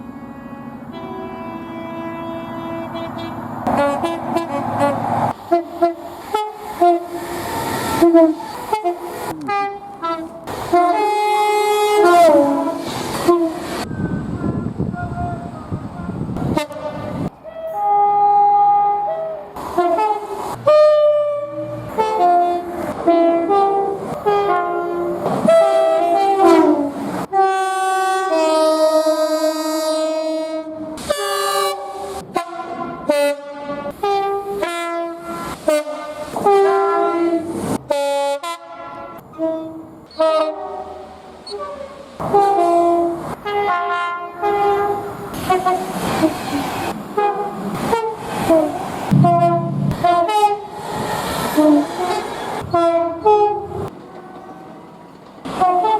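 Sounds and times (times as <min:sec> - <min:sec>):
locomotive air horn blasts: 0:00.0 - 0:55.9.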